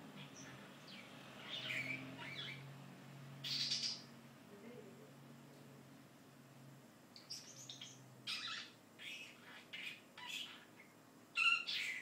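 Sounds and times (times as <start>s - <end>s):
talking bird chattering: 7.2s - 12.0s.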